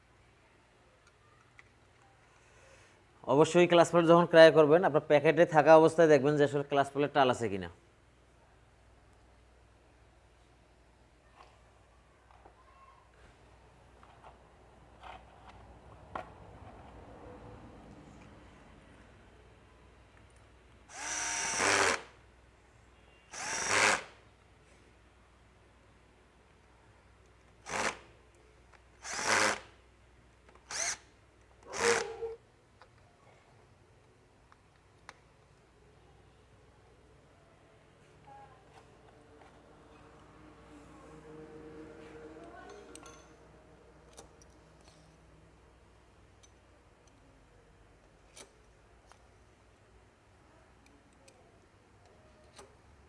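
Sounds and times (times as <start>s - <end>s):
power drill bursts: 20.9s - 22.1s, 23.3s - 24.1s, 29.0s - 29.7s, 30.7s - 31.1s.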